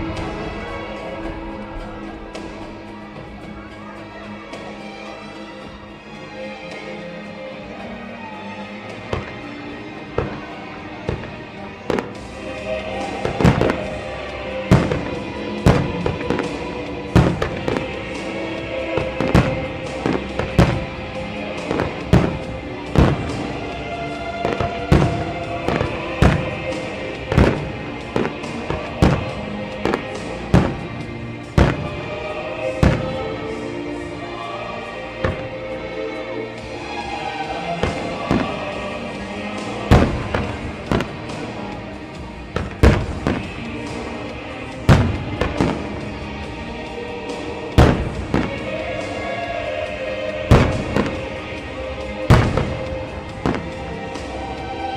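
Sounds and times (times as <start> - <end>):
fireworks bursting with sharp bangs: 0.0 - 5.2, 8.9 - 54.9
background music: 0.0 - 54.9
firework shells booming: 37.8 - 41.9, 42.5 - 46.3, 47.7 - 48.9, 50.5 - 51.6, 52.2 - 54.2.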